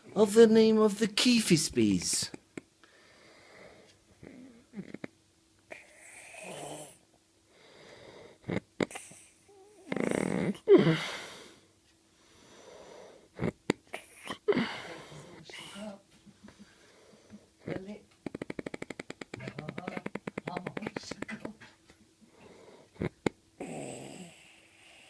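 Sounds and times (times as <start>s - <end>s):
man snoring: 5.7s - 7.0s, 9.8s - 11.3s, 22.4s - 25.0s.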